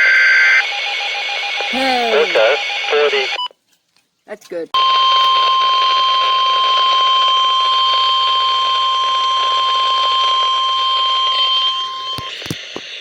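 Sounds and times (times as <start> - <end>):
loud steady alarm tone: 0.5 - 3.4, 4.8 - 12.3
radio hiss: 2.1 - 3.4.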